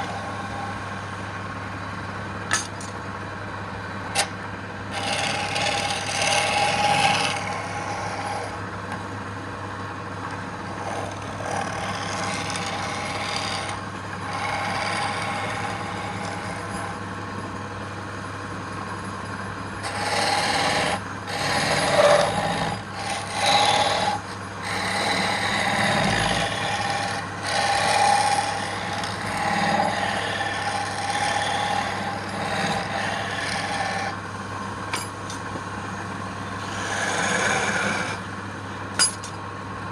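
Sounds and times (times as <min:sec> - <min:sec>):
turning tool scraping wood: 0:00.0 - 0:00.9, 0:04.2 - 0:08.7, 0:10.6 - 0:17.1, 0:19.8 - 0:34.2, 0:36.5 - 0:38.3
wood lathe humming: 0:00.0 - 0:01.7, 0:04.1 - 0:09.0, 0:09.7 - 0:39.1.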